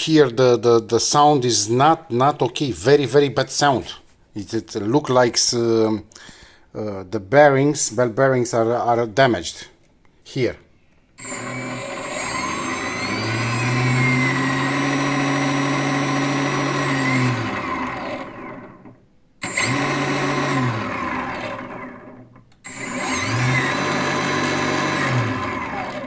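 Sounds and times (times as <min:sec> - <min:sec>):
electric motor whining: 0:11.2 - 0:26.0.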